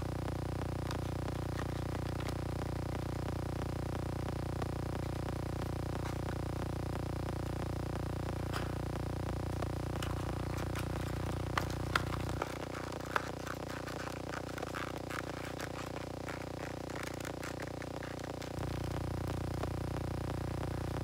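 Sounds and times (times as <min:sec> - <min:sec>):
steady electrical hum: 0:00.0 - 0:21.0
small objects clicking and scraping: 0:10.0 - 0:18.6.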